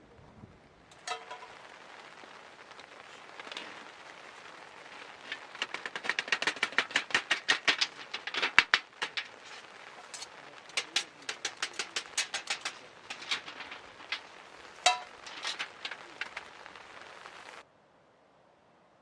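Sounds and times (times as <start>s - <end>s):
campfire crackling and popping: 0.7s - 17.6s
metallic clink: 14.9s - 16.0s.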